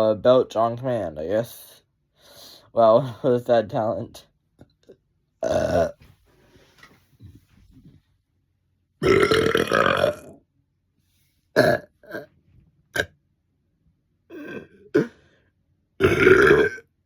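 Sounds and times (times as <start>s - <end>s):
person belching: 5.4s - 6.0s, 9.0s - 10.4s, 11.6s - 12.3s, 12.9s - 13.1s, 14.3s - 15.2s, 16.0s - 16.9s.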